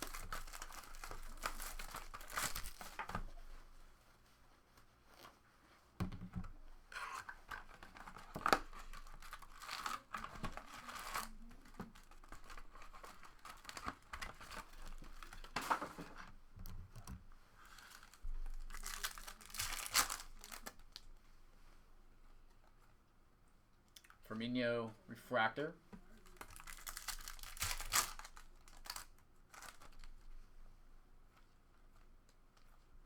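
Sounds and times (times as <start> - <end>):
plastic and foil wrappers crinkling: 0.0 - 3.7, 6.9 - 16.3, 17.0 - 21.2, 26.0 - 30.4.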